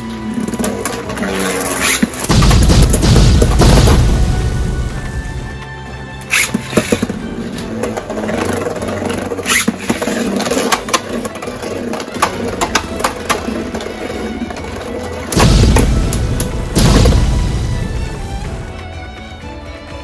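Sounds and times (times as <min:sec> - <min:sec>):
background music: 0:00.0 - 0:20.0
spinning tops clashing: 0:01.3 - 0:03.6, 0:06.2 - 0:07.7, 0:09.2 - 0:11.3
loud noisy blasts: 0:02.0 - 0:07.7, 0:15.3 - 0:19.1.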